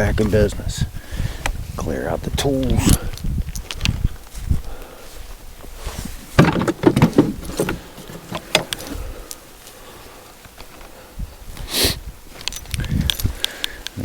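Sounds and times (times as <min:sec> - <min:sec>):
tools knocking and clattering: 0:06.4 - 0:08.8.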